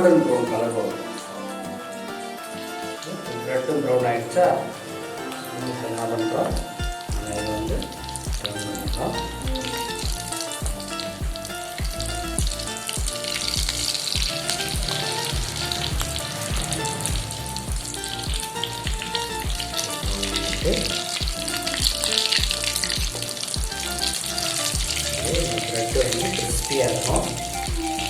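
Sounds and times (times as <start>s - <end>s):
background music with a beat: 6.5s - 28.0s.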